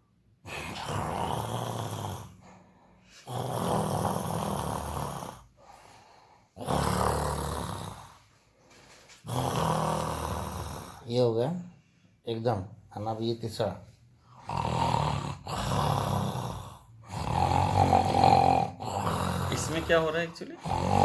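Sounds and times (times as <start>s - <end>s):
person snoring: 0.4s - 8.3s, 9.2s - 11.2s, 14.3s - 21.0s.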